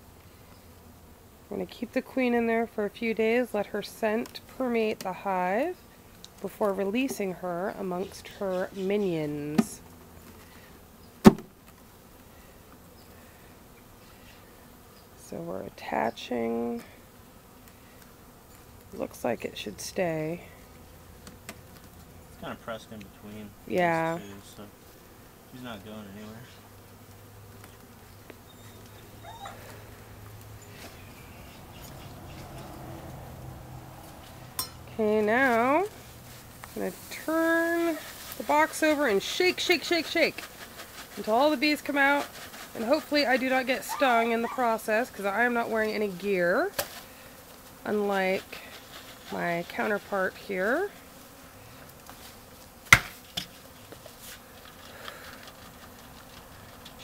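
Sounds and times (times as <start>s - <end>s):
bees buzzing: 0.0s - 57.0s
sharp knock: 11.2s - 11.5s, 52.9s - 53.2s.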